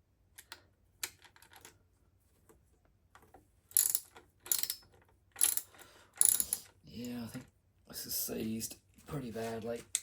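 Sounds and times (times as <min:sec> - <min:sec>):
ratchet wrench clicking: 0:03.7 - 0:04.8, 0:05.4 - 0:06.7.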